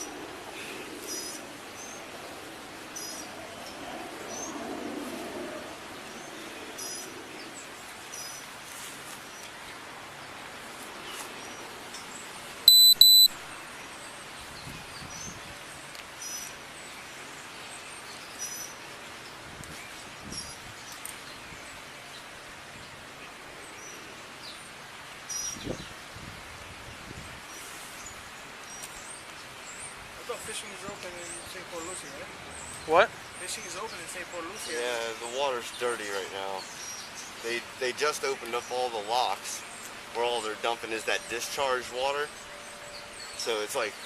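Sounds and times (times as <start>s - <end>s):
outdoor background hiss: 0.0s - 44.0s
birds chirping: 11.0s - 22.3s, 28.0s - 44.0s
double electronic beep: 12.7s - 13.3s.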